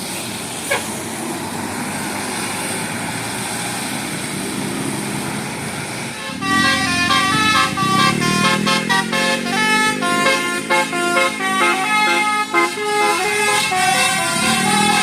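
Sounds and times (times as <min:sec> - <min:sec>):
bus engine and road noise: 0:00.0 - 0:15.0
multi-tone bus horn melody: 0:00.6 - 0:00.9, 0:06.1 - 0:15.0.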